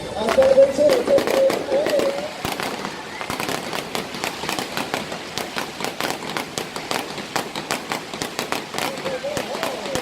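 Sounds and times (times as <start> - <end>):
fireworks crackling: 0.0 - 10.0.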